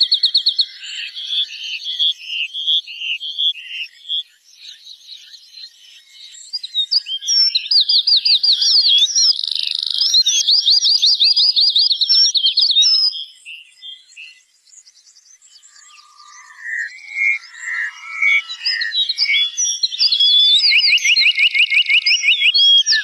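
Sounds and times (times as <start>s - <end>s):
songbird singing: 0.0s - 23.0s
high bird chirps: 7.4s - 23.0s.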